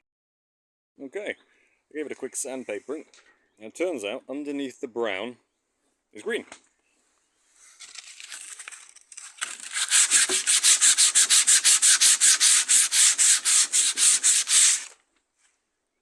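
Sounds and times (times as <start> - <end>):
sandpaper rubbing on wood: 9.5 - 15.0.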